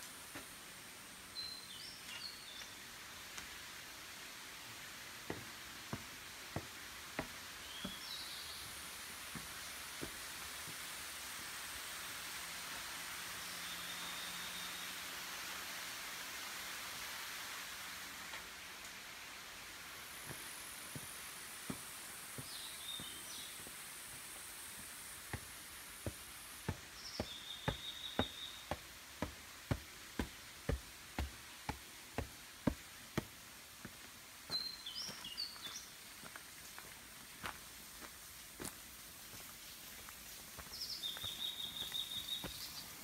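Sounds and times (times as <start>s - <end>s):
footsteps: 5.2s - 10.9s, 20.1s - 35.3s
waterfall rushing: 19.0s - 33.4s
bird chirping: 21.7s - 23.8s, 26.0s - 29.4s, 40.7s - 43.0s.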